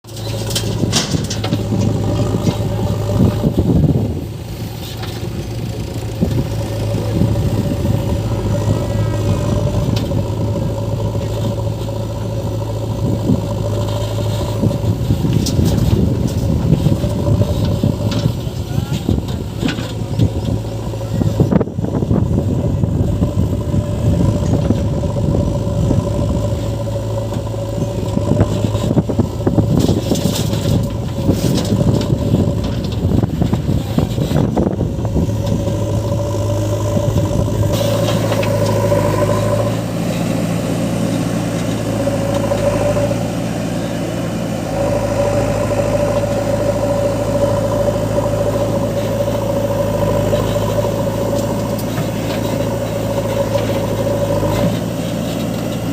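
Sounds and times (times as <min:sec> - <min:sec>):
backhoe diesel engine under load: 0:00.0 - 0:55.9
clattering: 0:00.1 - 0:03.5.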